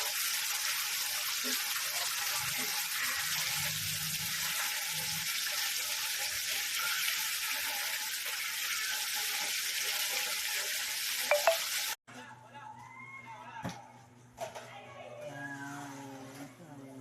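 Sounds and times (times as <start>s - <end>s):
food frying sizzle: 0.0s - 12.0s.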